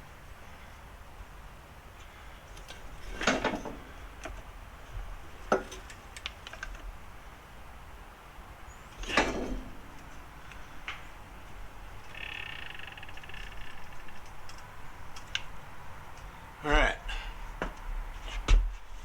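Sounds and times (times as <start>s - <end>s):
metal parts scraping clunks: 2.6s - 4.0s, 8.9s - 10.2s.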